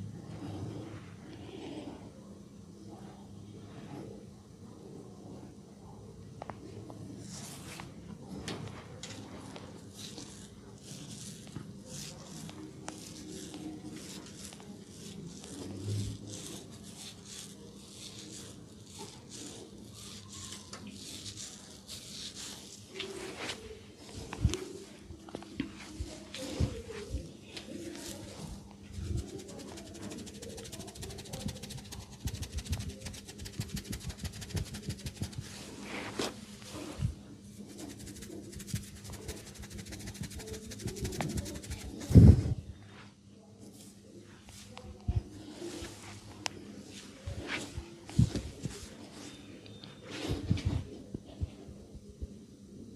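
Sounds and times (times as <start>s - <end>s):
wet rubbing of oiled hair: 27.8s - 37.0s, 37.6s - 42.2s.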